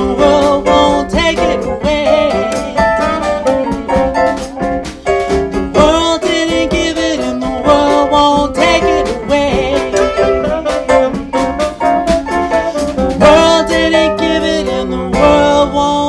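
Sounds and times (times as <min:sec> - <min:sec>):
jazz style spiritual: 0:00.0 - 0:16.0.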